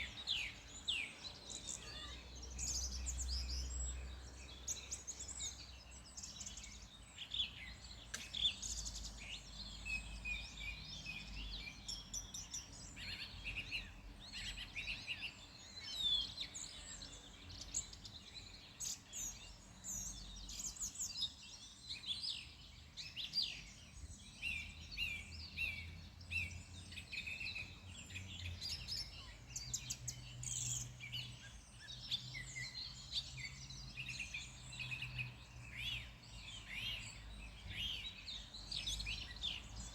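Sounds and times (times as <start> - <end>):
songbirds singing and chirping: 0.0 - 39.9.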